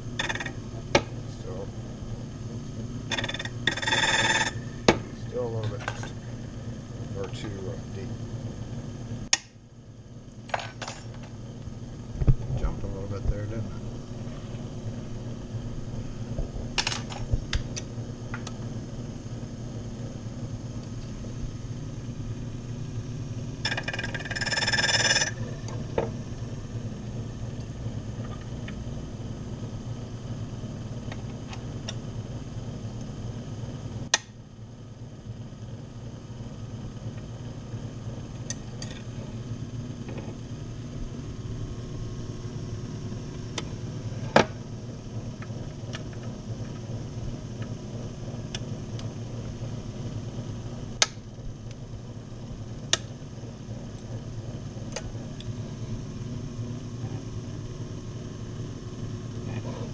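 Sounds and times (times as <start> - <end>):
electric motor running: 0.0 - 9.2, 18.7 - 29.8.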